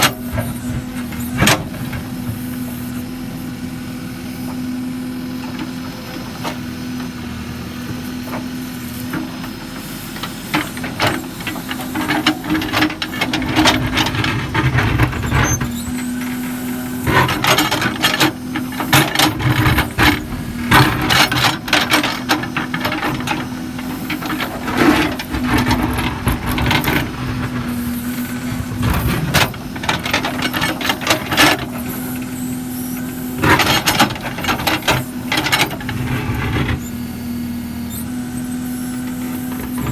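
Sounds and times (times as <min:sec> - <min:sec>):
diesel engine running: 0:00.0 - 0:39.9
machine squeals and clanks: 0:09.4 - 0:39.9.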